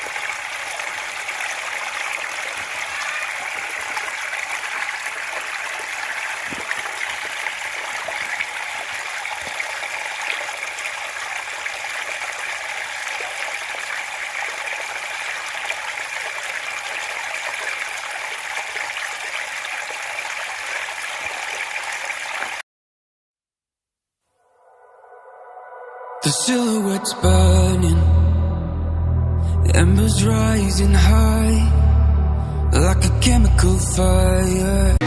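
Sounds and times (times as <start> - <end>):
rain falling: 0.0 - 22.6.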